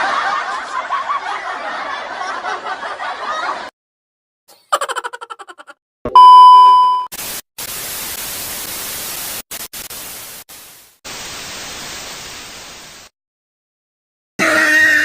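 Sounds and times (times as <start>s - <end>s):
steady beep: 6.1s - 7.1s
static hiss: 7.2s - 13.1s.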